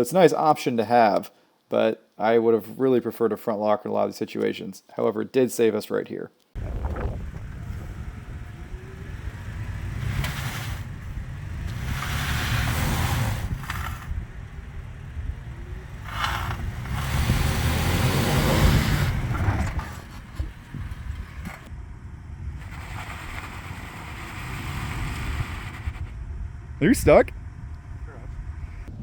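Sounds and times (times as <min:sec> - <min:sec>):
engine running under throttle: 0:06.6 - 0:26.8.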